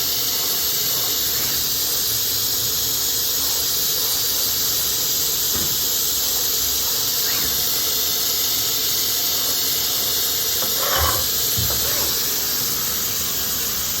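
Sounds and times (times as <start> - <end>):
router spindle whining: 6.9 - 13.0.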